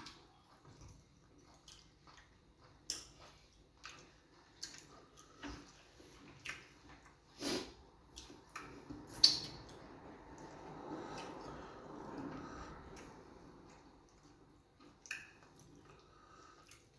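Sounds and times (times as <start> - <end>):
wet chewing and lip smacks: 0.0 - 16.9.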